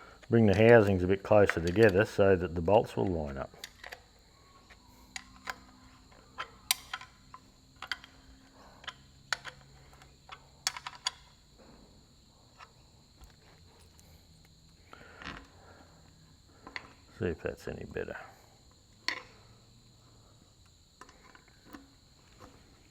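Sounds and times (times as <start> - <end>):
faint high-pitched whine: 0.0 - 22.9
clicks and taps of bolts and spanner: 0.2 - 4.0, 4.7 - 5.8, 6.4 - 8.2, 8.8 - 11.3, 19.0 - 19.4.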